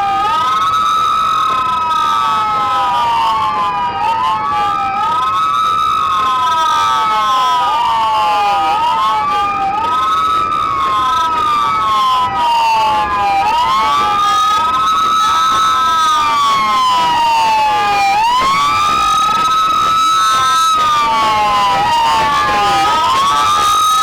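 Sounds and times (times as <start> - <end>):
police sirens wailing: 0.0 - 24.0.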